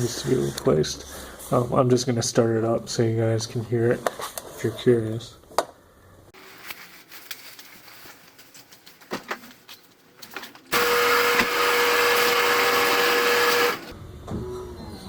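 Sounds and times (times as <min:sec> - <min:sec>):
starter motor cranking engine: 0:10.7 - 0:13.9.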